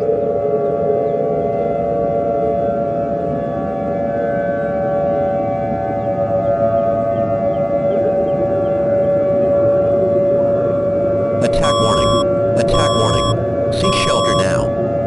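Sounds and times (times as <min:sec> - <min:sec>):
civil defense siren: 0:00.0 - 0:11.4.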